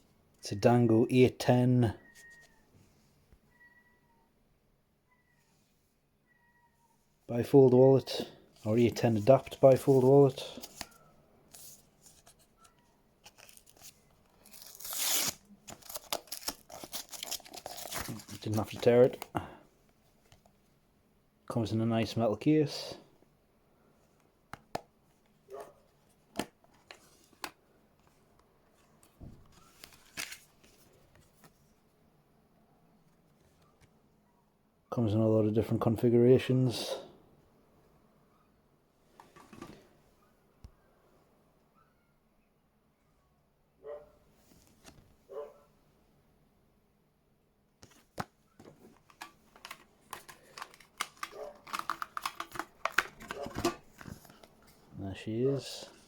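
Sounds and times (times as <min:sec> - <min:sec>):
wallet packaging clicks and rustling: 0:08.7 - 0:19.5, 0:28.9 - 0:31.7, 0:47.8 - 0:54.9.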